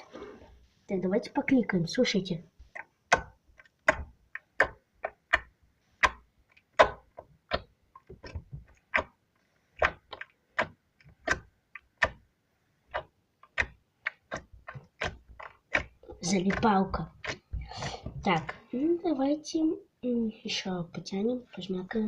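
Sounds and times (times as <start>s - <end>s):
slime clicking in hands: 2.7s - 9.2s, 9.8s - 17.5s.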